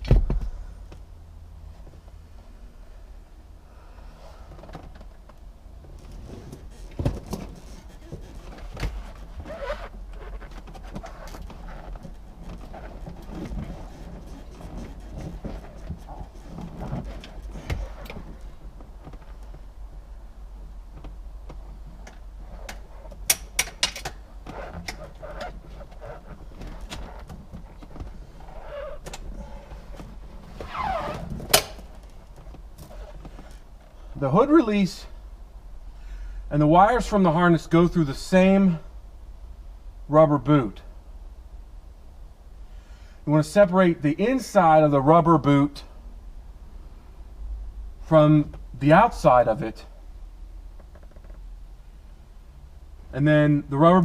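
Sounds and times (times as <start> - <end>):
parts and tools clicking and knocking: 21.0 - 25.6.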